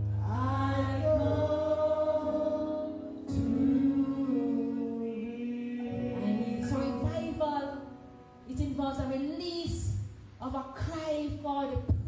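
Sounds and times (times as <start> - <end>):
slow hymn singing: 0.0 - 8.2.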